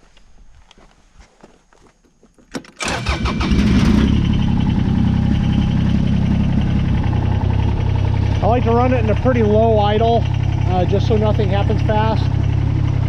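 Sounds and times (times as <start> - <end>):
tractor diesel engine starting and idling: 2.6 - 13.0.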